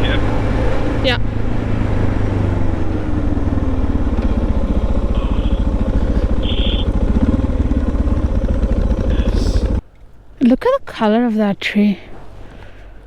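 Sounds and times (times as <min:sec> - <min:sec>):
motorcycle engine idling: 0:00.0 - 0:09.8.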